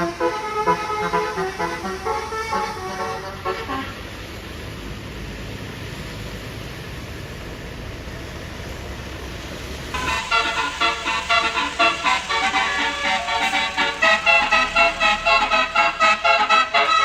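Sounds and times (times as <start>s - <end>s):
musical bus horn melody: 0.0s - 4.4s, 10.0s - 17.0s
road traffic rumble: 0.0s - 17.0s.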